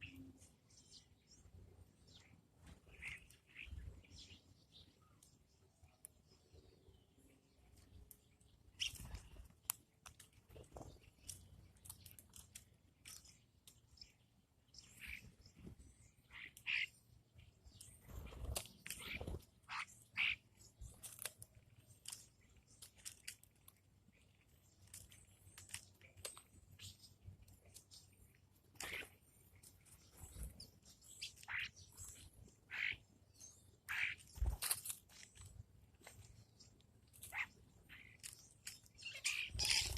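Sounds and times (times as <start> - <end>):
faint bird chirps: 0.0 - 39.9
small clicks and taps: 9.5 - 13.8.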